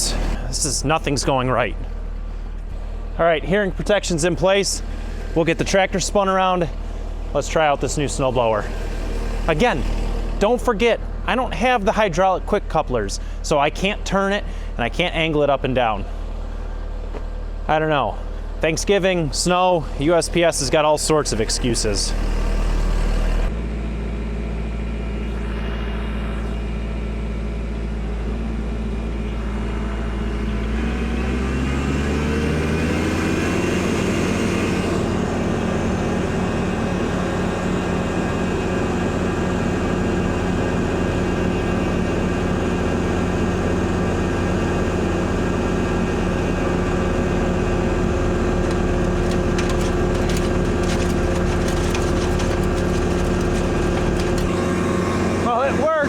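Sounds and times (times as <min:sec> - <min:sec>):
tractor diesel engine revving: 0:00.0 - 0:01.8, 0:28.5 - 0:56.0.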